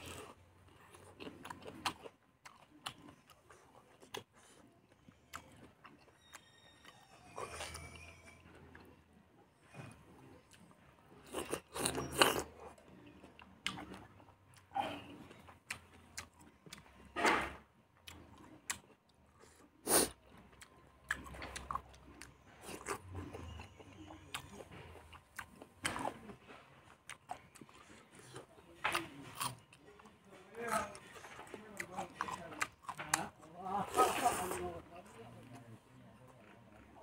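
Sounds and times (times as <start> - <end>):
person chewing food: 0.0 - 17.2, 17.8 - 35.6.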